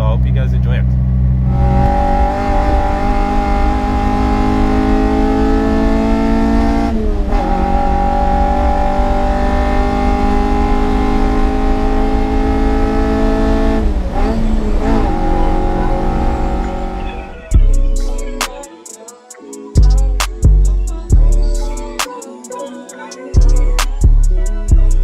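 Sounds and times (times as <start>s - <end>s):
car engine revving under load: 0.0s - 18.6s.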